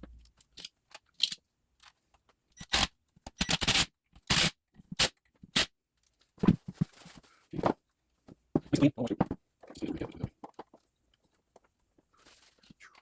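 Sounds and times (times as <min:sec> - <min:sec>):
metal parts scraping and knocking: 0:00.0 - 0:02.0.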